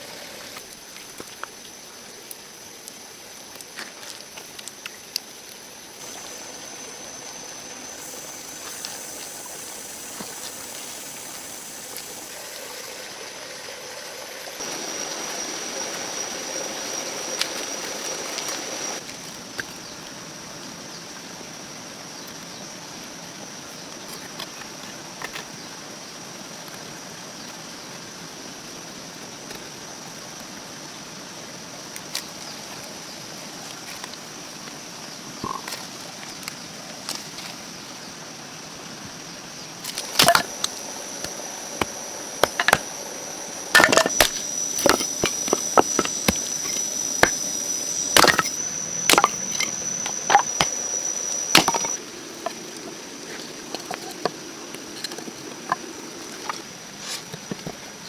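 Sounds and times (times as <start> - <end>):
insect trilling: 5.6 - 19.0, 39.6 - 56.5
chopping strikes on wood: 48.1 - 50.8, 51.5 - 52.0.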